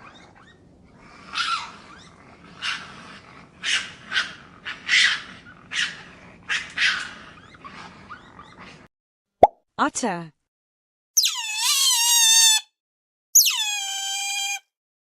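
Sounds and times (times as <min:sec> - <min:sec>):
raccoon screechy cries: 0:11.2 - 0:12.7, 0:13.4 - 0:14.6.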